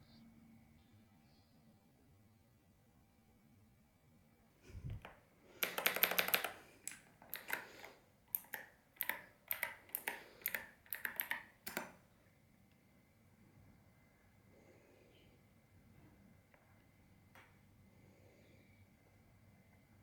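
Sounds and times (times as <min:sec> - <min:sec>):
mechanical keyboard typing: 0:05.0 - 0:12.0.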